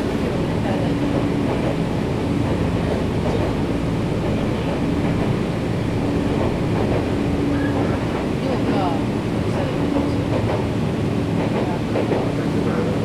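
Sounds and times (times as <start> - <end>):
train wheels rumbling on rail: 0.0 - 13.0.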